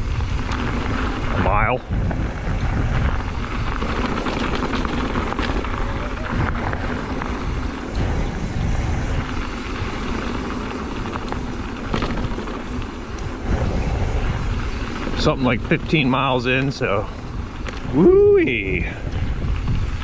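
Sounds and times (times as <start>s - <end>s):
bike rattling over bumps: 0.0s - 20.0s
tyres rumbling on dirt: 0.0s - 20.0s
wind rushing over microphone: 0.0s - 20.0s.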